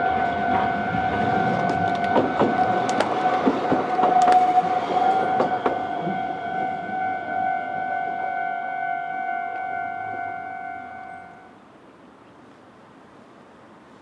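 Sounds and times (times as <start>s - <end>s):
tram wheels clacking over rails: 0.0s - 6.3s.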